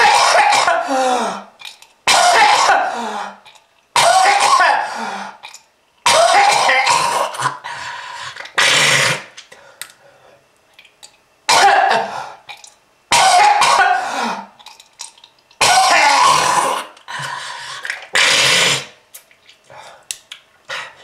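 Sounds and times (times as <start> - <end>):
person coughing hard: 0.0 - 1.4, 2.1 - 3.4, 4.0 - 5.1, 6.0 - 7.6, 11.5 - 12.3, 13.1 - 14.5, 15.6 - 16.9.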